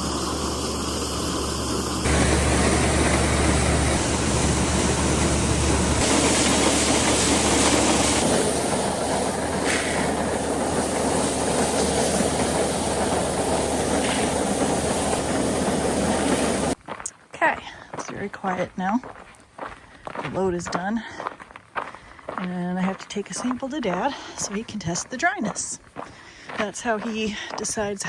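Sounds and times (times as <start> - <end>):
grain dryer machinery running: 0.0 - 16.8
low hum: 0.0 - 16.8.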